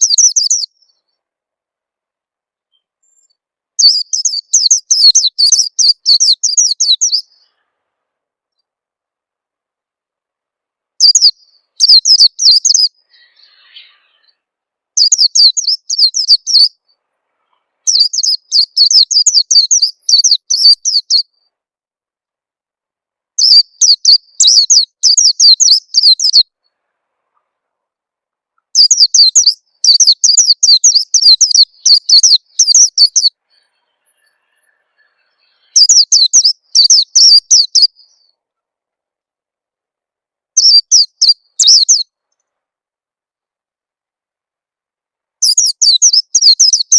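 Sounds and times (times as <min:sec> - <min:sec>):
bird twittering chirps: 0:00.0 - 0:01.3, 0:02.6 - 0:07.8, 0:11.0 - 0:21.6, 0:23.3 - 0:27.6, 0:28.5 - 0:38.5, 0:40.6 - 0:42.6, 0:45.4 - 0:46.9.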